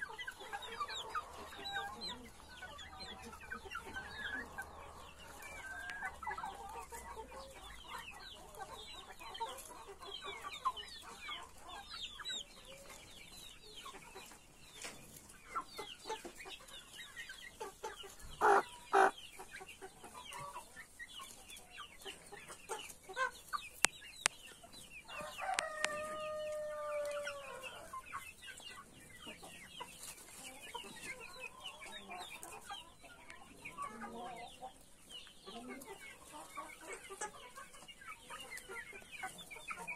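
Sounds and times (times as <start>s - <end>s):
chickens clucking: 0.0s - 39.9s
chicken squawks: 18.4s - 19.2s
rooster crowing: 25.1s - 27.8s.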